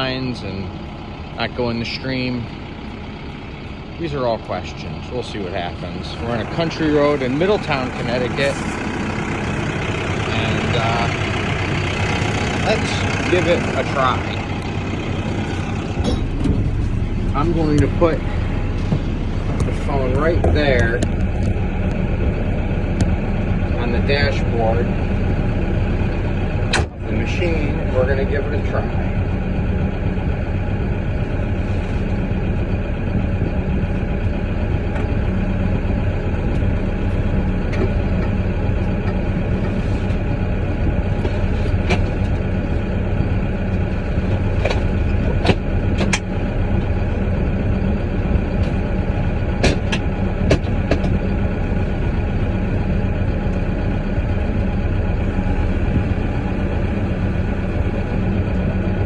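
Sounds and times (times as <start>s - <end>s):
diesel engine running: 0.0s - 59.0s
sharp clicks and knocks: 44.4s - 46.3s, 49.5s - 51.3s.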